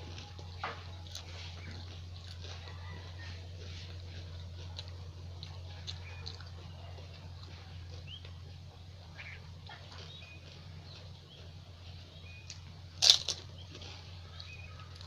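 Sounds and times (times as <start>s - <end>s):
chewing: 0.0s - 15.0s
crisp shell crunch: 12.2s - 15.0s.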